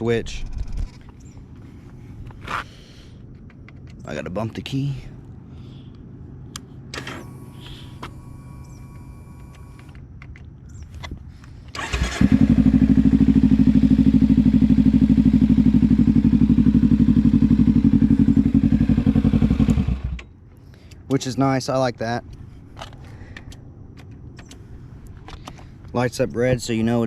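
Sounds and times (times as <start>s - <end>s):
faint hum: 0.0s - 11.8s
electric starter cranking: 11.8s - 12.6s
motorcycle engine idling: 11.8s - 20.4s.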